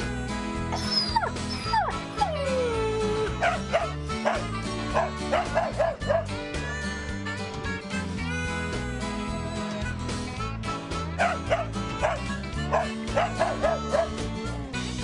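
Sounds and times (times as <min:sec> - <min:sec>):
guitar music: 0:00.0 - 0:15.0
dog whining and yipping: 0:00.7 - 0:06.3, 0:11.2 - 0:14.2.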